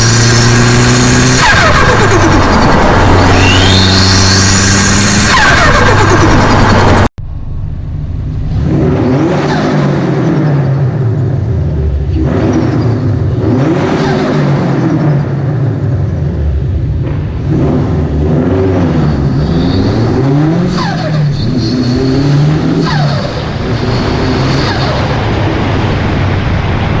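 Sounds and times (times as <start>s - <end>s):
car engine revving: 0.0s - 27.0s
turbo flutter and whistle: 3.3s - 4.6s.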